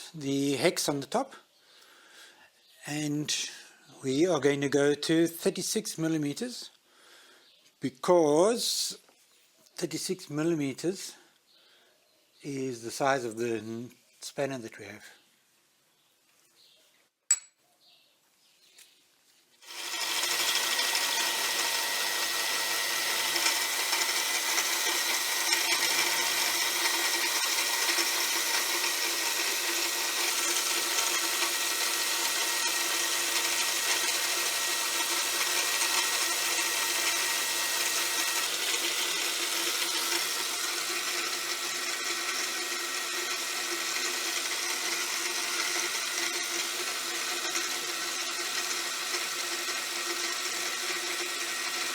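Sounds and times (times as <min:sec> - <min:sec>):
machine tool cutting steel: 0:19.6 - 0:51.9.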